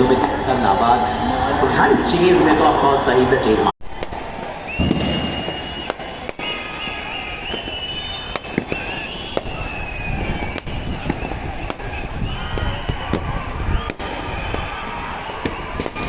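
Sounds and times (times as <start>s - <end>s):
crowd din: 0.0s - 16.0s
fireworks bangs: 3.8s - 16.0s
high whistling fireworks: 3.9s - 16.0s.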